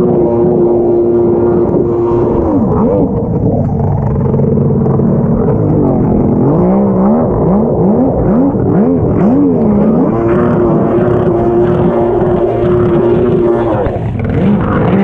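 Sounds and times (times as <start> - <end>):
jet ski engine revving: 0.0 - 15.0.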